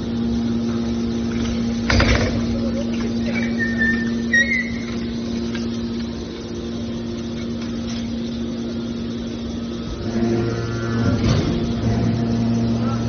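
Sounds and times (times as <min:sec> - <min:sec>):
hydraulic power unit humming: 0:00.0 - 0:13.0
short high squeal: 0:03.4 - 0:05.0.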